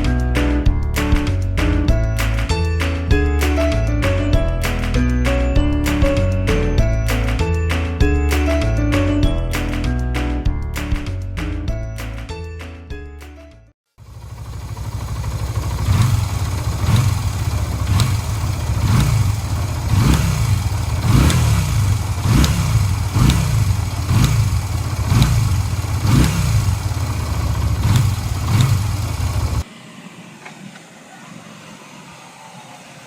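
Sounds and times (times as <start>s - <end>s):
motorcycle engine revving: 14.0s - 29.7s.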